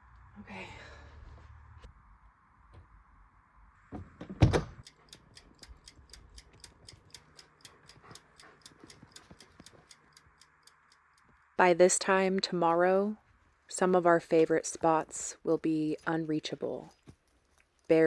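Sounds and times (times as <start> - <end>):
faint fast ticking: 4.8 - 11.6.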